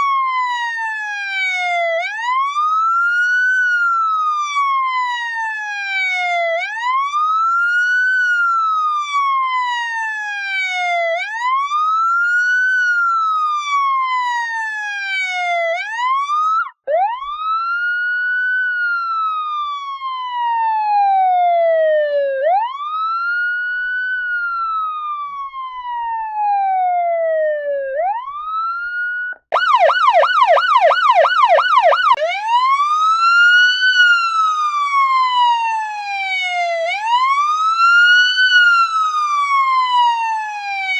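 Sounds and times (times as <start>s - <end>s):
fast siren yelp: 0.0s - 40.9s
police siren wailing: 0.0s - 40.9s.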